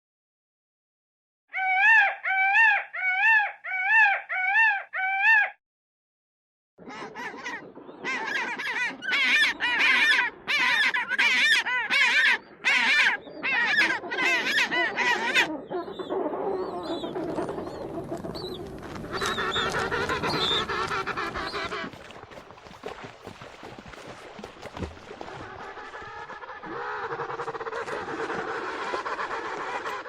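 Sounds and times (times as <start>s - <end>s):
birds calling: 6.8s - 22.7s.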